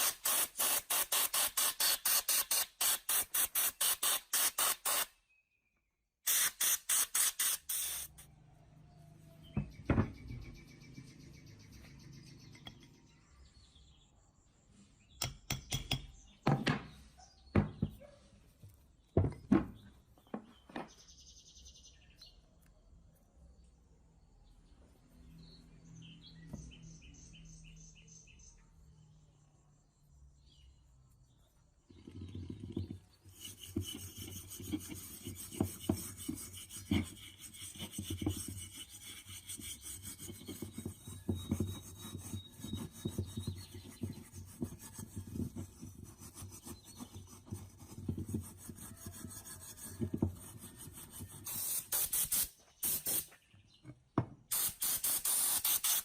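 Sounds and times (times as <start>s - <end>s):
short hissing bursts: 0.0s - 5.1s, 6.3s - 8.3s, 51.4s - 53.3s, 54.5s - 56.0s.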